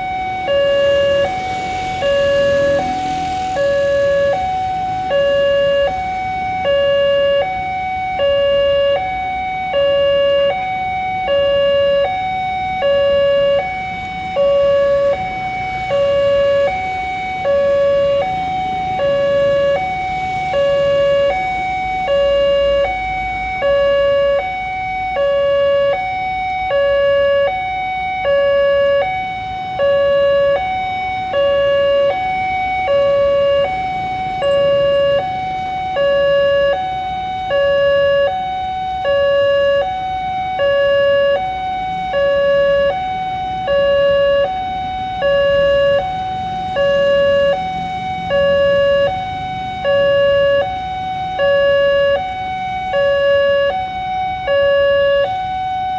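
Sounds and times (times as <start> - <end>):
level crossing warning alarm: 0.0 - 55.9.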